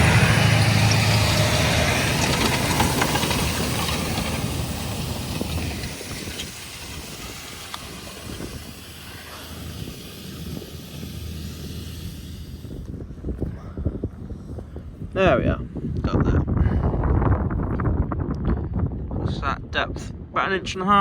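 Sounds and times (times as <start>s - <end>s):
loud hiss: 0.0s - 13.2s
tractor engine hum: 0.0s - 15.2s.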